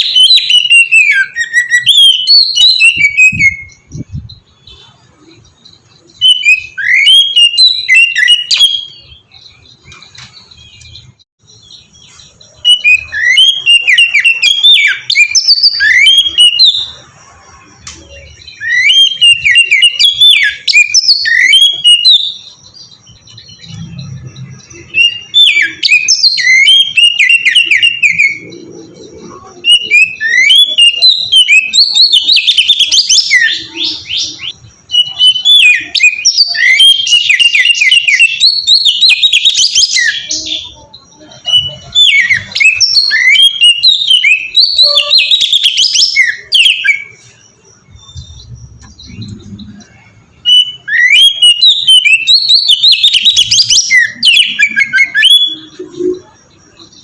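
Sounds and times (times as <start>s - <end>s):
bird singing whistled phrases: 0.0s - 17.1s, 17.8s - 57.0s.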